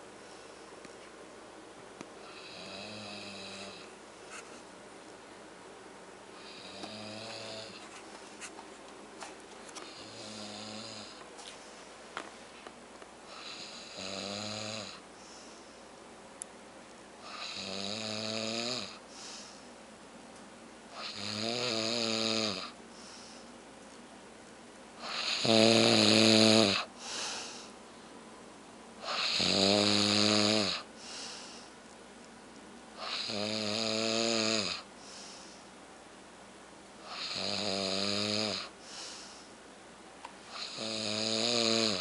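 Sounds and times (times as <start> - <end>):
man snoring: 2.2 - 3.9, 6.4 - 7.8, 9.8 - 11.2, 13.3 - 15.0, 17.2 - 19.0, 21.0 - 22.8, 25.0 - 27.7, 29.0 - 31.6, 33.0 - 34.9, 37.0 - 39.2, 40.5 - 42.0.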